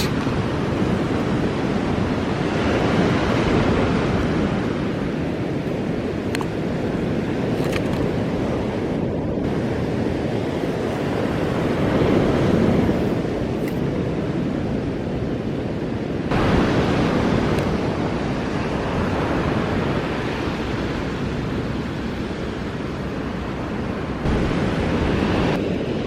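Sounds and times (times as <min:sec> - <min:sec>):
surf washing onto beach: 0:00.0 - 0:08.8, 0:16.0 - 0:26.0.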